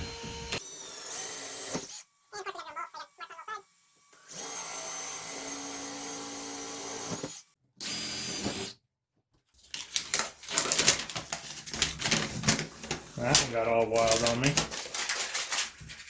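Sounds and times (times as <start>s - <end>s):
power drill boring wood: 0.0s - 2.5s, 4.2s - 8.7s.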